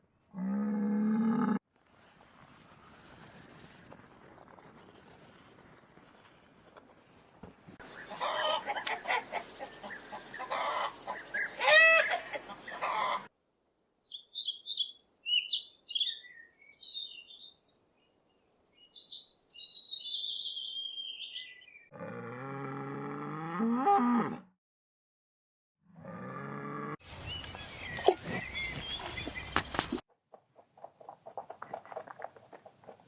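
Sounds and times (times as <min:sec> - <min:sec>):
low drawn-out animal call: 0:00.3 - 0:01.6
chickens clucking: 0:07.8 - 0:13.3
small bird chirping and trilling: 0:14.1 - 0:17.8.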